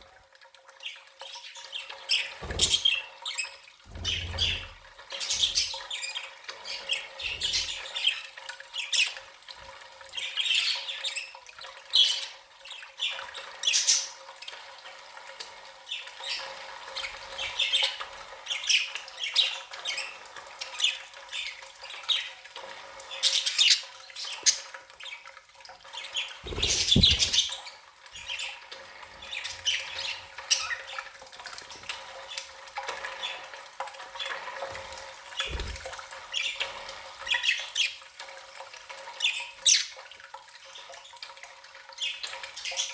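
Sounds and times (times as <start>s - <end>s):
budgerigars chirping and squawking: 2.1s - 3.0s, 3.9s - 8.2s, 26.5s - 27.6s.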